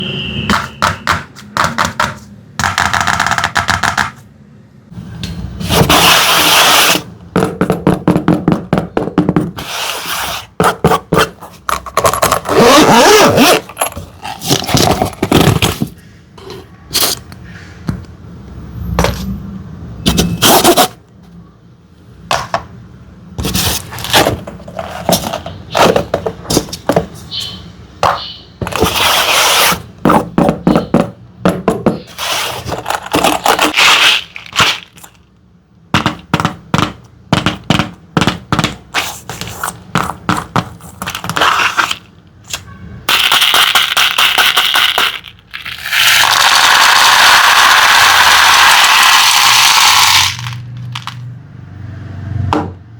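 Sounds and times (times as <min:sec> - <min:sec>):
hard candies and slime crackling: 0:32.1 - 0:35.4, 0:43.1 - 0:51.2.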